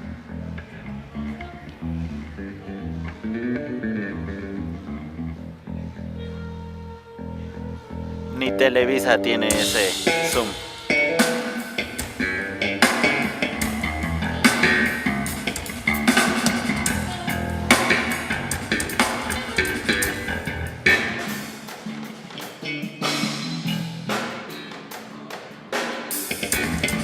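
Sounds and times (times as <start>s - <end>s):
live band playing: 0.0s - 27.0s.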